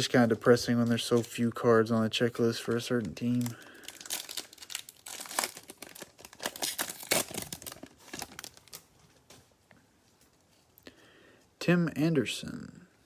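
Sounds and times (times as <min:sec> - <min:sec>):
wrapper tearing and crinkling: 0:02.6 - 0:08.9.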